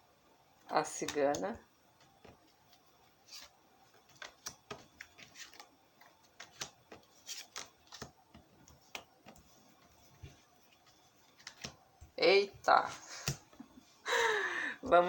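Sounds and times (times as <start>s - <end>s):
cards clicking and tapping on table: 4.0s - 5.7s, 6.4s - 9.5s, 11.4s - 11.8s, 13.2s - 13.4s.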